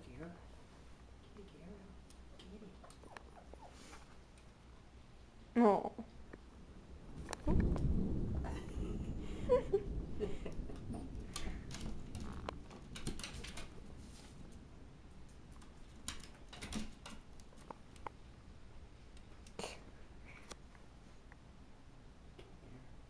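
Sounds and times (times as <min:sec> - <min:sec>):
low rumble: 0:06.0 - 0:15.3
pet pawing taps and scratches: 0:10.8 - 0:14.3, 0:15.2 - 0:18.2.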